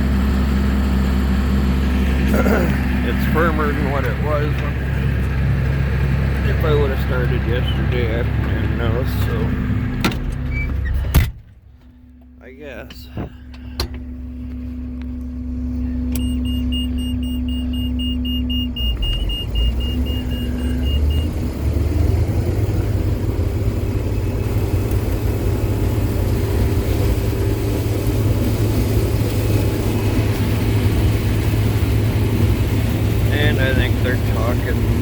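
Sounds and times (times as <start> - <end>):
diesel engine running: 0.0 - 35.0
rapid electronic warning beeper: 16.2 - 21.4.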